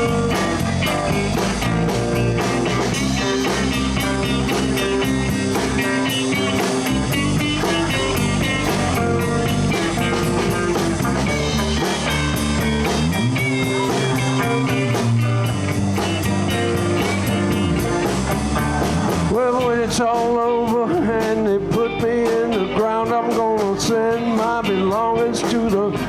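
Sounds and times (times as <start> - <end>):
electric guitar solo: 0.0 - 18.2
bass: 0.0 - 26.0
drum-kit beat: 0.0 - 26.0.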